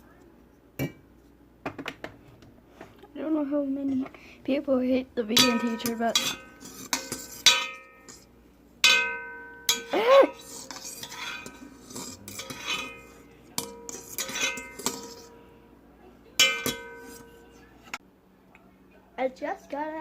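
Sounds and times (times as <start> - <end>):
cutlery clinking against dish: 5.4 - 15.4, 16.4 - 17.5.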